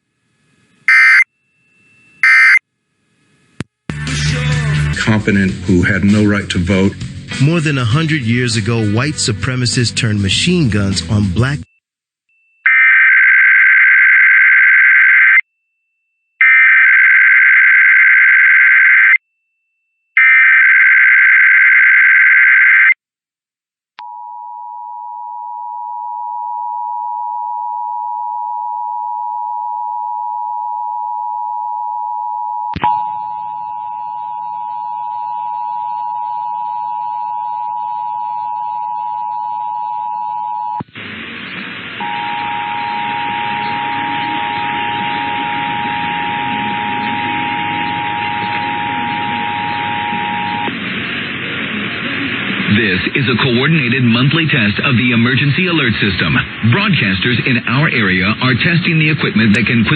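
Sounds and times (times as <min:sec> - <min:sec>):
steady dual tone alert: 0:00.9 - 0:02.6, 0:42.0 - 0:50.7.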